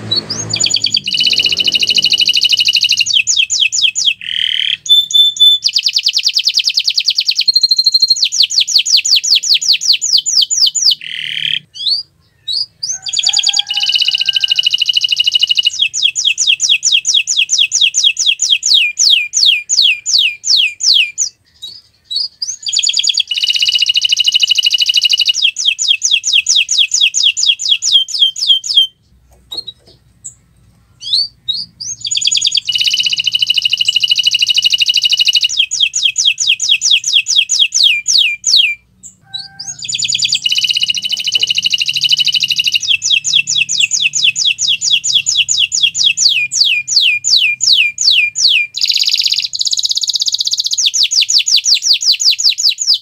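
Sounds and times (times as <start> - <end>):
canary singing trills: 0.0 - 53.0.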